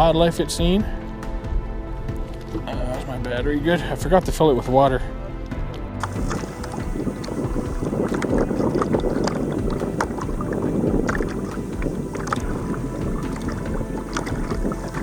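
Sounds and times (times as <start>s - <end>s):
wind on microphone: 0.0s - 15.0s
water splashing against boat hull: 6.0s - 15.0s.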